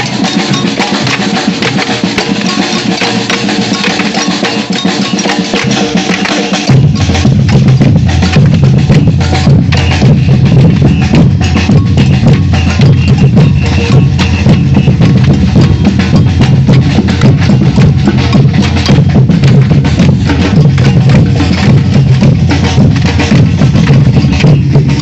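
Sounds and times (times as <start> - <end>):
samba percussion band: 0.0 - 25.0
deep bass drums: 6.6 - 25.0.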